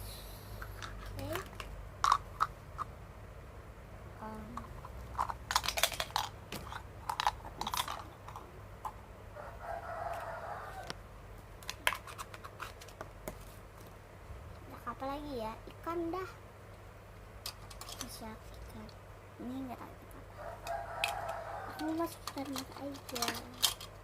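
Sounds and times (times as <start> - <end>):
plastic toy pieces clattering: 4.5 - 8.4, 17.4 - 18.2, 20.7 - 24.0.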